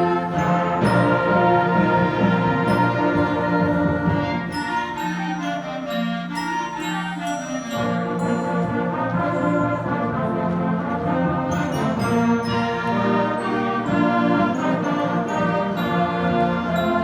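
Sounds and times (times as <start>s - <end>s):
concert band playing: 0.0s - 17.0s.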